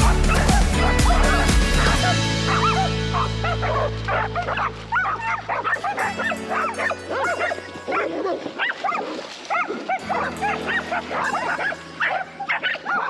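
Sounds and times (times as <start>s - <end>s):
background music with steady beat: 0.0s - 5.0s
dogs barking and yipping: 0.0s - 13.0s.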